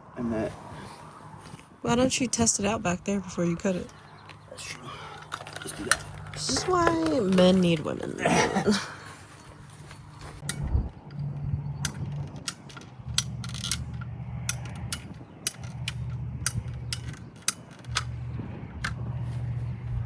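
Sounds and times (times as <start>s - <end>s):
low hum: 0.0s - 20.0s
mechanical clicks and clacks: 11.8s - 18.2s.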